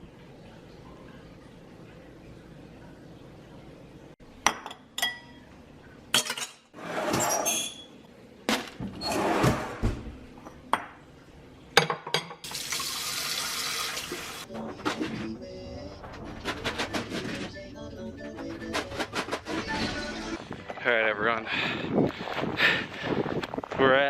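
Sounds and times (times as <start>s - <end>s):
dishes clinking in a sink: 4.4s - 5.5s, 6.1s - 7.9s, 11.8s - 12.5s
tap water running: 12.4s - 14.5s.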